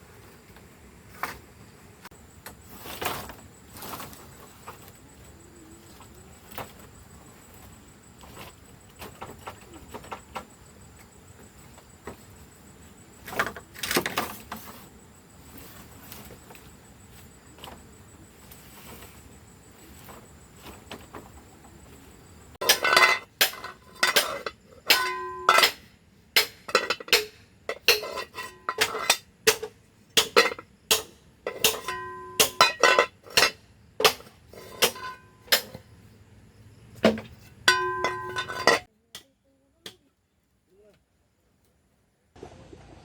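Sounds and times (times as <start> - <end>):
metal tool strikes ringing: 31.6 - 33.0, 37.7 - 38.8.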